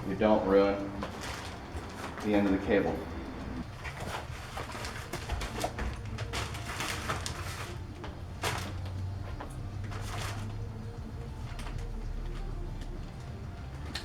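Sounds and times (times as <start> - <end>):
low steady hum: 0.0 - 3.8
cardboard scraping and rustling: 0.3 - 10.6.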